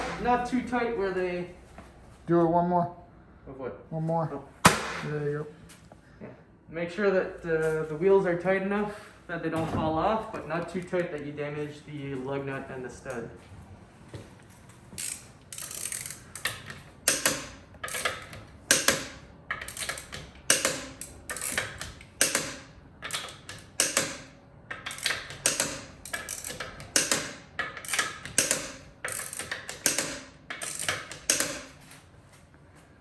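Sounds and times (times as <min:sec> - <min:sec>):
ratchet wrench clicking: 0:15.0 - 0:31.8.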